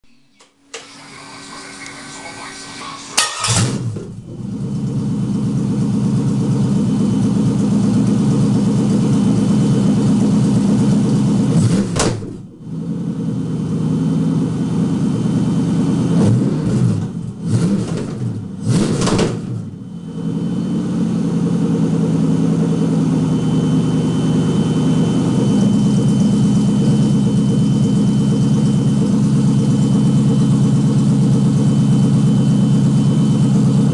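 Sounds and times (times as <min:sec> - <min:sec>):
car engine starting and idling: 0:00.4 - 0:33.9
engine revving: 0:00.8 - 0:05.7, 0:11.4 - 0:32.0.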